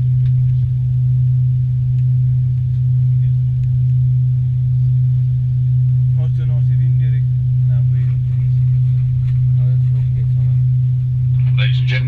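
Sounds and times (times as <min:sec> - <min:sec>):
airliner cabin hum: 0:00.0 - 0:12.0.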